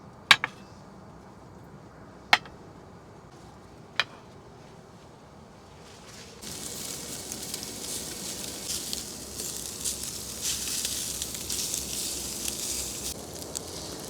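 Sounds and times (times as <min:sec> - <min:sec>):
meat sizzling in a hot pan: 0:06.4 - 0:14.0.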